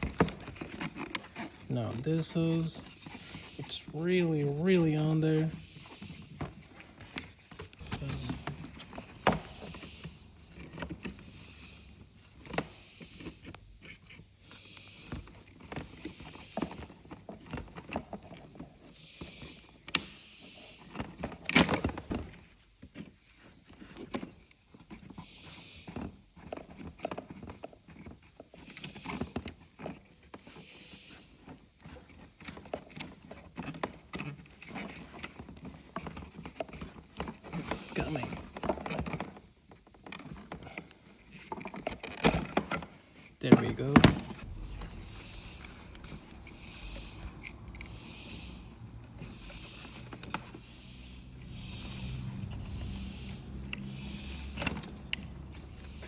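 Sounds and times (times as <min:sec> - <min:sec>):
hands working a fuel hose: 0:00.0 - 0:56.0.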